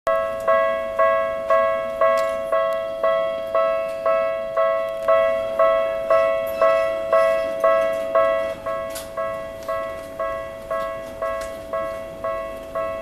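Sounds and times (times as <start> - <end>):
level crossing warning bell: 0.1 - 13.0.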